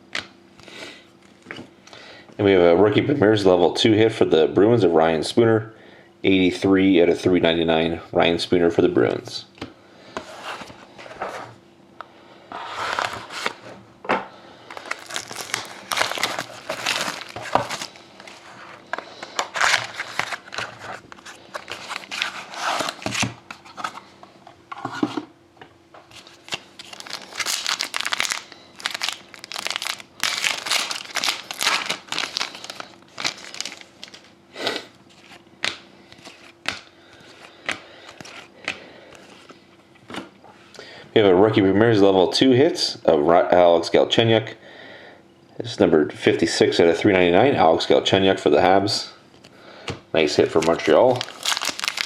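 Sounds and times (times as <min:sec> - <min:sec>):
card pack wrapper tearing: 0:14.7 - 0:18.4, 0:19.0 - 0:23.3, 0:26.1 - 0:34.3, 0:50.4 - 0:52.0
wrapper crinkling: 0:14.7 - 0:24.0, 0:26.1 - 0:34.4, 0:50.4 - 0:52.0
cards being handled: 0:14.7 - 0:24.1, 0:26.0 - 0:34.4, 0:35.0 - 0:40.3, 0:50.4 - 0:52.0.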